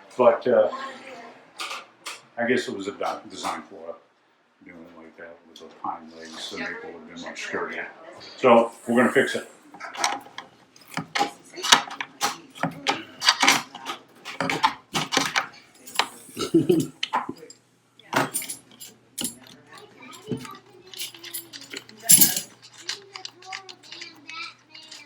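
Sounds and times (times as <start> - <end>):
small hard objects clinking: 20.2 - 25.0.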